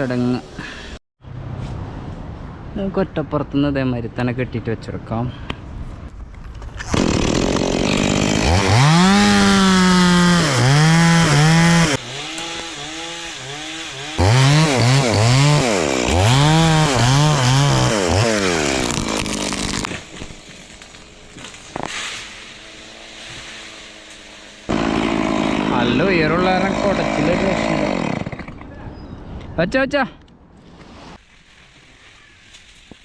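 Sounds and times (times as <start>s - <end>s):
chainsaw revving: 6.8s - 20.1s, 22.5s - 28.6s.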